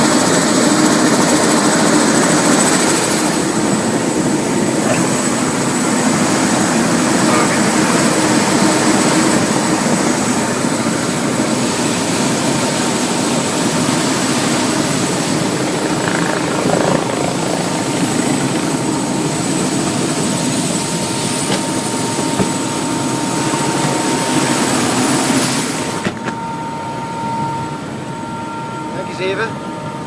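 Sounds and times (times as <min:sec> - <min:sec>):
helicopter rotor and engine: 0:00.0 - 0:30.0
faint steady whine: 0:14.0 - 0:20.1.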